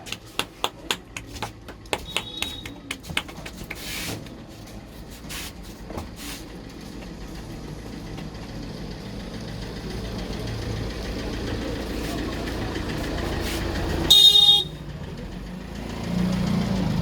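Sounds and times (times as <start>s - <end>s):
hand slaps and taps on head: 0.0s - 4.3s
vehicle engine hum: 0.0s - 17.0s.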